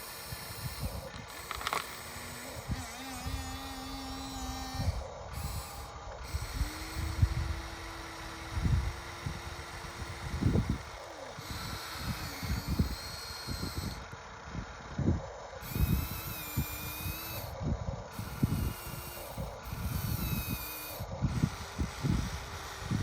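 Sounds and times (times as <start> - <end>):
small electric motors whining: 0.0 - 23.0.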